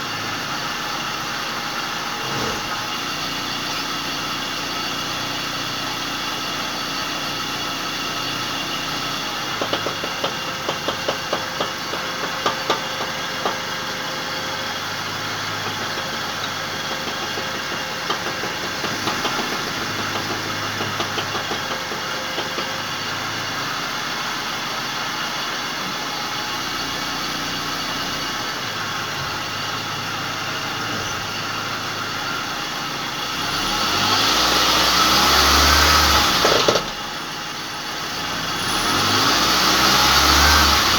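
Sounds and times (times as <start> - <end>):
car engine running: 0.0 - 40.9
engine revving: 1.5 - 4.6, 15.2 - 23.5, 33.1 - 40.9.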